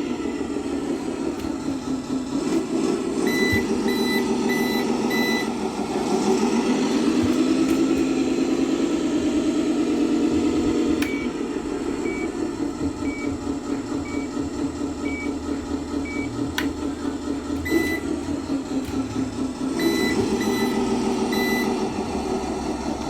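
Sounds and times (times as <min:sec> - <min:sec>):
truck engine sound from speaker: 0:00.0 - 0:23.0
click: 0:16.5 - 0:16.8
short electronic beeps: 0:19.8 - 0:21.7.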